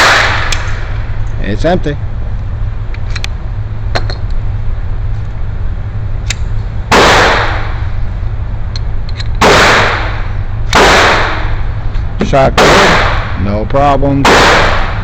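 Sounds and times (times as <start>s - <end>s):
pistol shot: 0.0s - 0.8s, 6.9s - 7.8s, 9.4s - 11.6s, 12.6s - 13.4s, 14.2s - 15.0s.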